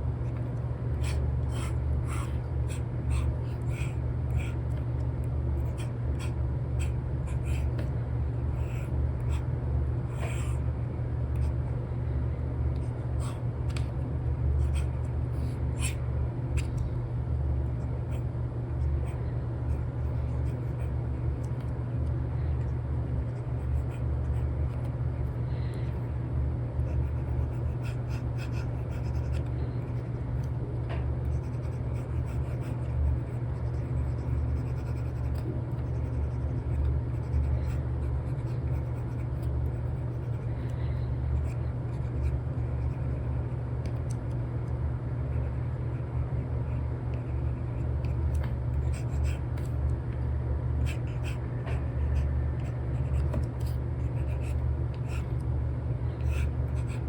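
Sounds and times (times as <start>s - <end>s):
steady low rumble: 0.0s - 57.0s
stylus tapping and scratching screen: 52.6s - 54.6s.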